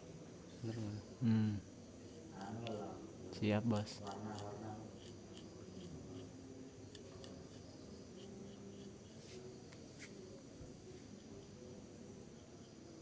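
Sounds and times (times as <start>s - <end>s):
scissors snipping hair: 4.0s - 6.3s.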